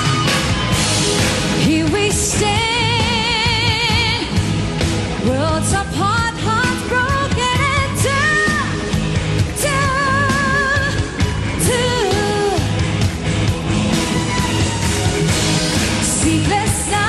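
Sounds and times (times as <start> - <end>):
full band playing: 0.0 - 17.0
woman singing with vibrato: 1.6 - 4.4, 5.2 - 12.9, 16.0 - 17.0.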